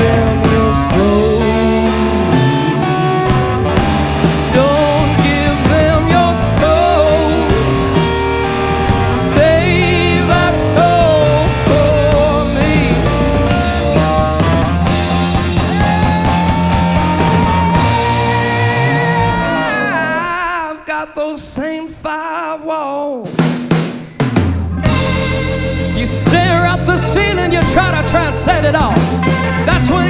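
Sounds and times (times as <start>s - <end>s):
rock band playing live: 0.0s - 20.6s, 23.4s - 30.0s
wavering lead guitar line: 0.0s - 20.9s, 24.2s - 30.0s.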